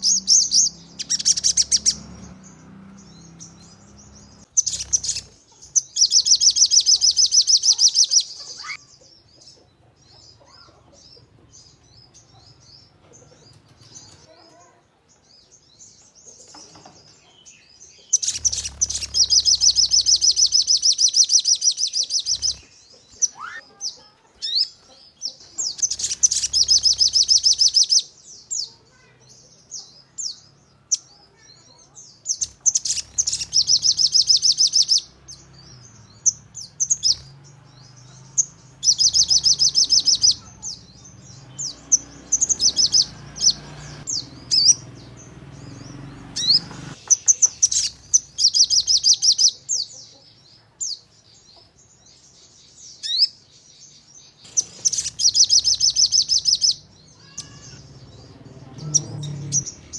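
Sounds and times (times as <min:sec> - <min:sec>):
bird calling in rapid trills: 0:00.0 - 0:08.9, 0:18.1 - 0:28.2, 0:32.3 - 0:49.7, 0:54.4 - 0:59.9
short bird chirps: 0:03.0 - 0:08.9, 0:18.0 - 0:23.8, 0:25.6 - 0:29.2, 0:30.3 - 0:35.4, 0:54.4 - 0:57.8.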